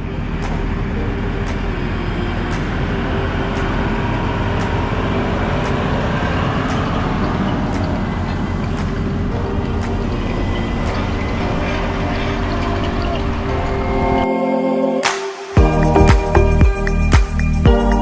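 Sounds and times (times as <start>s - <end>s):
tractor engine drone: 0.0s - 14.3s.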